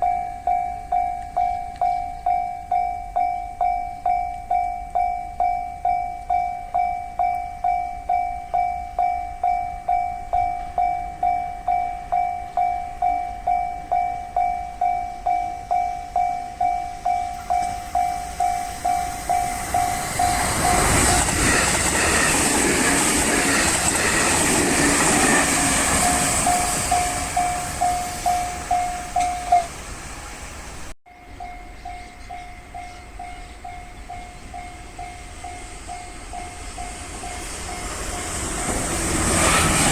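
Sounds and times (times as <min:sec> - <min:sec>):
level crossing warning bell ringing: 0:00.0 - 0:38.8
passing train running noise: 0:00.0 - 0:39.9.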